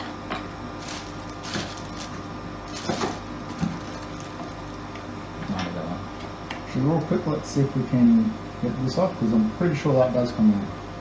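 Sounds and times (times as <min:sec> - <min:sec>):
low electrical hum: 0:00.0 - 0:11.0
packaging rustling: 0:00.8 - 0:04.9.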